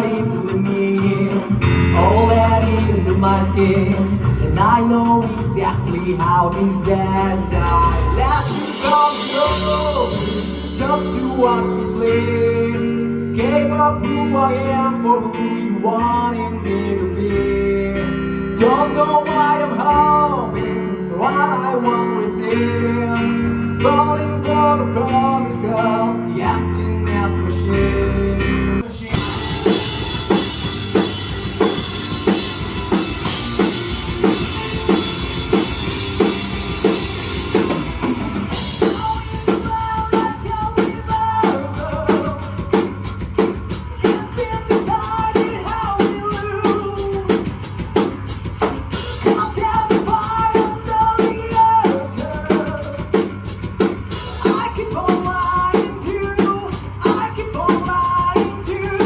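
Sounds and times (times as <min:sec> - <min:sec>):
rock band instrumental: 0:00.0 - 0:15.5, 0:28.8 - 0:59.0
drum kit beat: 0:08.0 - 0:12.2, 0:29.0 - 0:59.0
lead melody line: 0:29.1 - 0:53.1.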